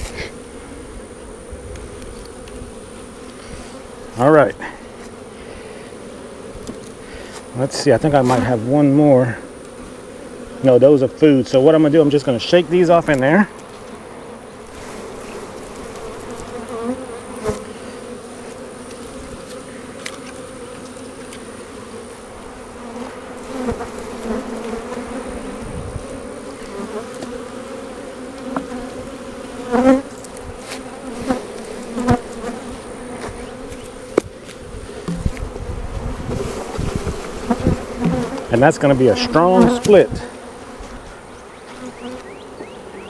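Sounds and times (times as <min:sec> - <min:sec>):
bees buzzing: 0:00.0 - 0:43.0
hive frames knocking: 0:28.3 - 0:41.0.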